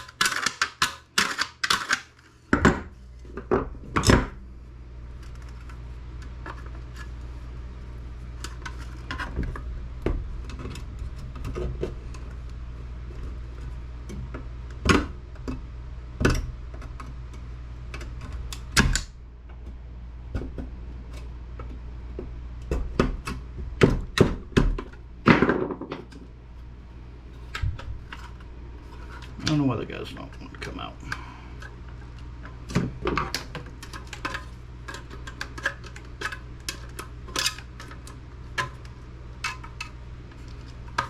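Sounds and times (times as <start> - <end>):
steady low hum: 0.0 - 41.0.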